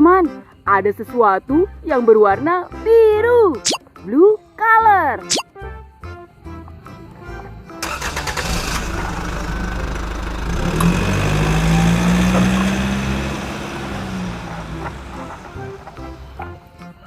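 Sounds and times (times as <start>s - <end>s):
vehicle engine driving past: 7.9s - 16.6s.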